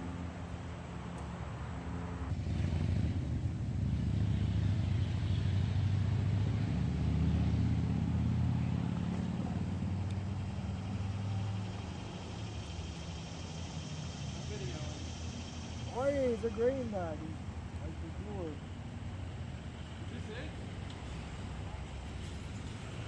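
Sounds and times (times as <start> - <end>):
diesel locomotive engine rumbling: 7.7 - 23.0.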